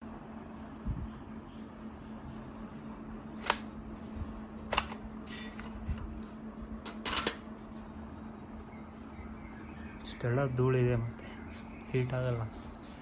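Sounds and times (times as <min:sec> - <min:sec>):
steady low hum: 0:00.0 - 0:13.0
laptop parts and tools clicking: 0:03.4 - 0:03.7, 0:04.7 - 0:06.0, 0:06.9 - 0:07.4.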